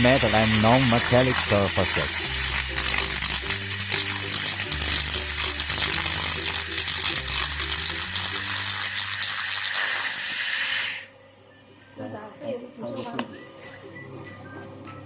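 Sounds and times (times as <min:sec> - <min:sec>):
laser cleaner crackling buzz: 0:00.0 - 0:11.1.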